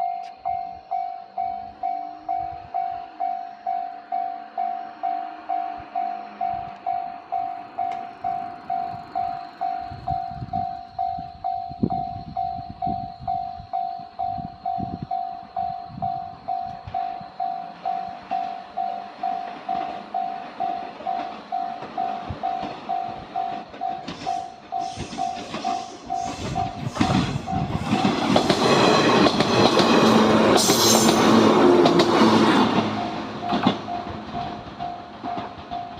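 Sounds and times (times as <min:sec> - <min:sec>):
level crossing warning bell: 0:00.0 - 0:30.6, 0:31.2 - 0:35.9
train passing: 0:00.0 - 0:35.9
train wheels clacking on rail joints: 0:15.6 - 0:35.9.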